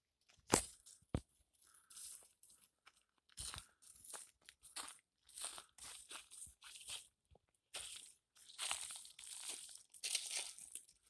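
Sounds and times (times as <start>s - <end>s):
crunching of dry leaves: 7.8s - 11.0s.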